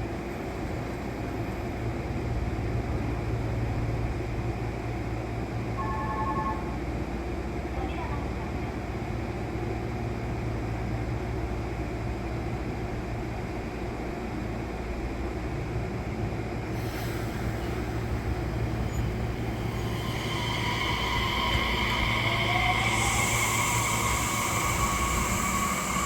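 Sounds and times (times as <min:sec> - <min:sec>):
electric train hum and rumble: 0:00.0 - 0:26.0
high steady tones: 0:18.0 - 0:26.0.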